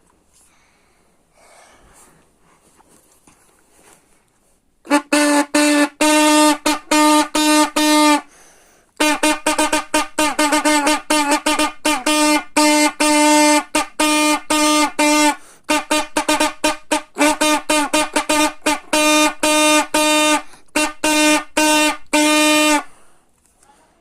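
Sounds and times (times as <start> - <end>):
brassy horn blasts: 4.8 - 8.4, 9.0 - 23.0.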